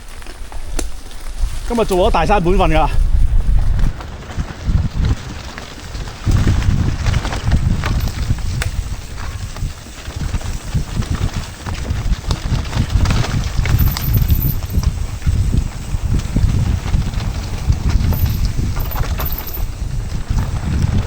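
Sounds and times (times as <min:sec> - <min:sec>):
wind rumbling on microphone: 0:00.0 - 0:21.0
knocks and rattles: 0:13.6 - 0:14.9, 0:17.9 - 0:19.7.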